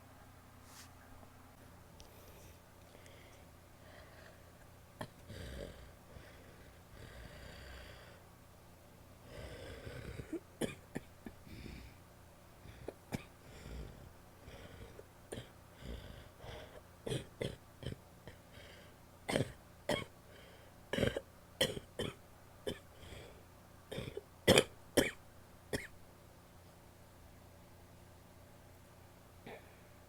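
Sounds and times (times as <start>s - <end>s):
woman coughing: 21.0s - 22.8s, 23.9s - 26.0s.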